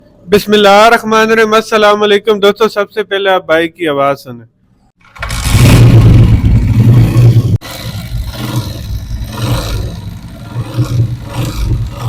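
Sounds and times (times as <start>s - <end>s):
motorcycle engine revving and idling: 5.0s - 12.0s.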